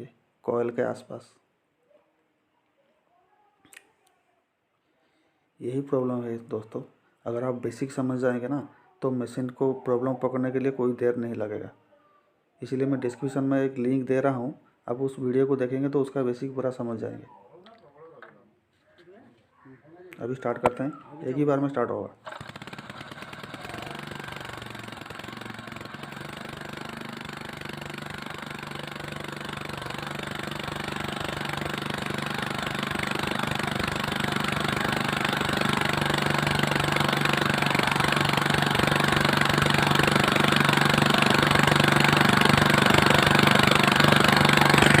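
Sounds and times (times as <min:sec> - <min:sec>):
pump engine running: 0:22.2 - 0:45.0.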